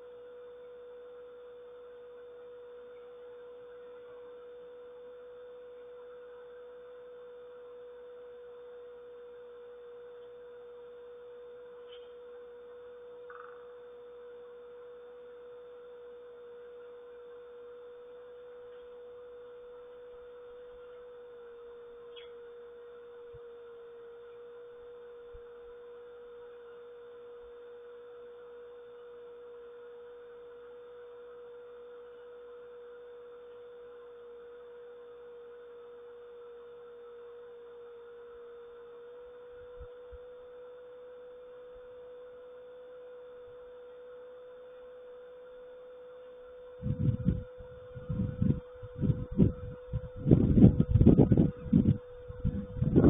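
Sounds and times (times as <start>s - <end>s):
thin bird chirp: 13.2s - 13.8s, 22.1s - 22.5s.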